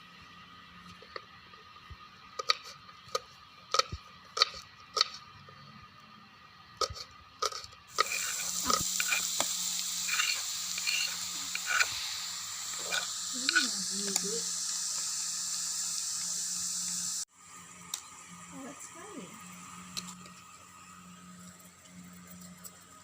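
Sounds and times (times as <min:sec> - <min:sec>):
dough sizzling in oil: 0:07.3 - 0:23.0.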